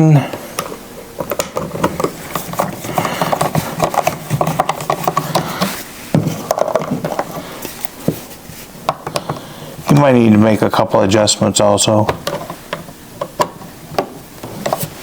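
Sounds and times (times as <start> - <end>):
screwdriver clicking and scraping: 0.6 - 5.8.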